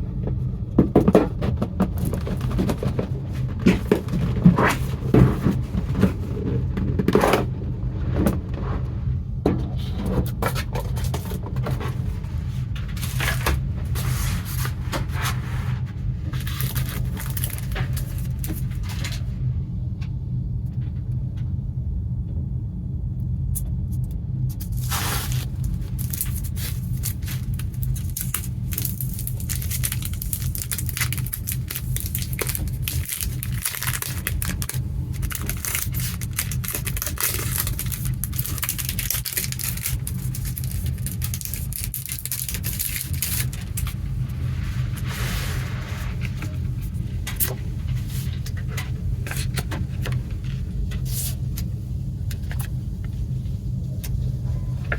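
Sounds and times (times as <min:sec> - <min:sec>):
steady low hum: 0:00.0 - 0:54.9
plastic wrap crinkling and tearing: 0:16.3 - 0:18.9, 0:24.6 - 0:47.5.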